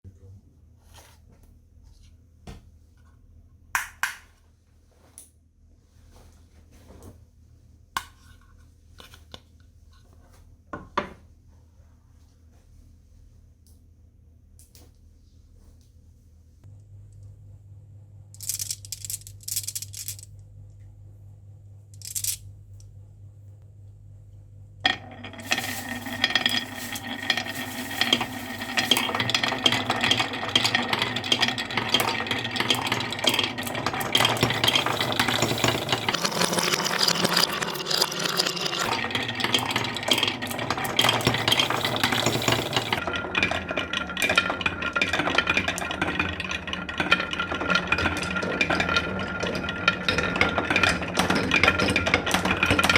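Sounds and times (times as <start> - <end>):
marbles clattering down a track: 18.4 - 20.2, 24.9 - 52.9.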